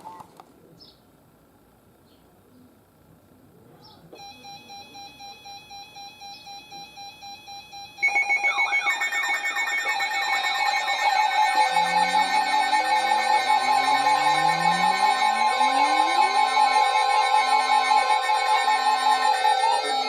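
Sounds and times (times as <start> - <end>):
faint pulsing beeping tone: 4.2 - 20.0
warbling alarm tones: 4.2 - 20.0.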